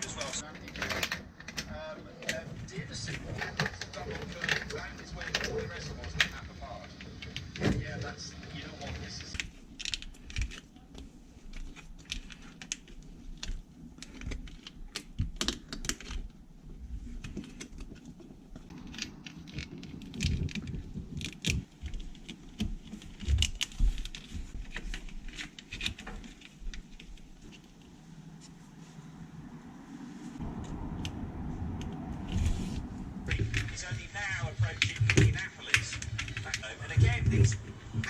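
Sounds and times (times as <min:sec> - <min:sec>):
plastic conduit clicking and rattling: 0:00.3 - 0:08.2, 0:08.8 - 0:27.8.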